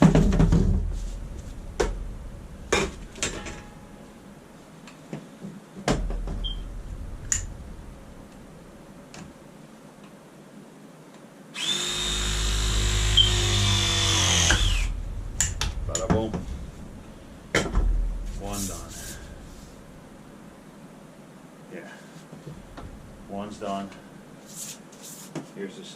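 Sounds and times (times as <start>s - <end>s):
crimping tool motor running: 11.6s - 15.0s.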